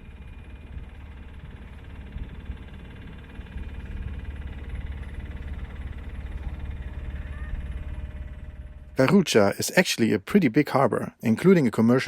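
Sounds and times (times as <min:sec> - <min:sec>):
boat engine throbbing: 0:00.0 - 0:09.6.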